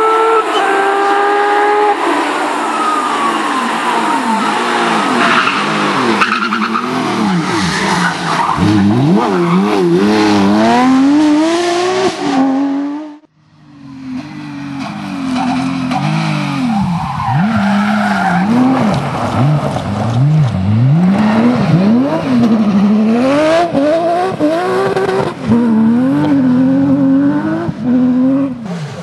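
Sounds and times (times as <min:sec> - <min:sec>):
rally car engine revving: 0:00.0 - 0:13.3, 0:13.9 - 0:29.0
tyres on gravel: 0:14.1 - 0:21.5.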